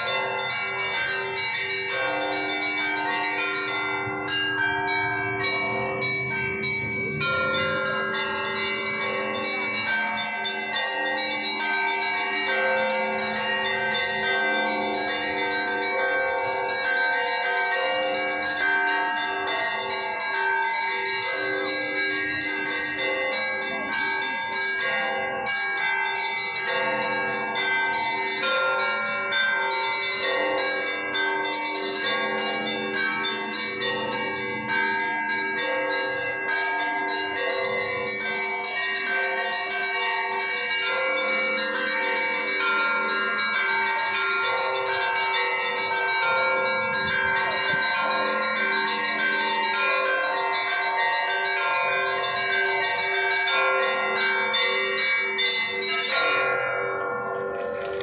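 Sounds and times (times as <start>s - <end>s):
church bells pealing: 0.0s - 58.0s.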